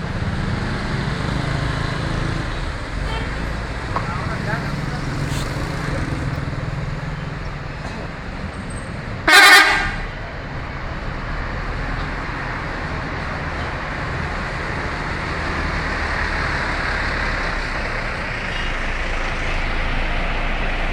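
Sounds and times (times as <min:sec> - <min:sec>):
engine and traffic rumble: 0:00.0 - 0:20.9
bus horn blast: 0:03.0 - 0:03.6, 0:09.2 - 0:10.2, 0:18.4 - 0:19.1.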